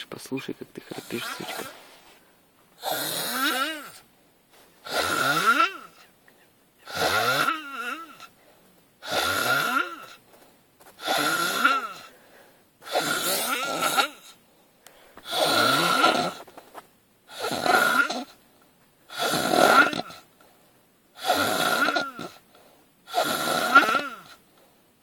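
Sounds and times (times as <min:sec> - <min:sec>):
person snoring: 0:00.9 - 0:01.9, 0:02.8 - 0:04.0, 0:04.8 - 0:06.0, 0:06.8 - 0:08.3, 0:09.0 - 0:10.2, 0:11.0 - 0:12.1, 0:15.2 - 0:16.5, 0:17.3 - 0:18.3, 0:19.1 - 0:20.2, 0:21.2 - 0:22.4, 0:23.1 - 0:24.4.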